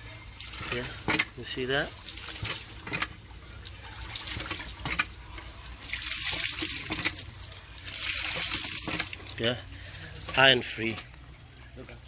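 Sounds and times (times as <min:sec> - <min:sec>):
water splashing from hand pump: 0:00.1 - 0:12.0.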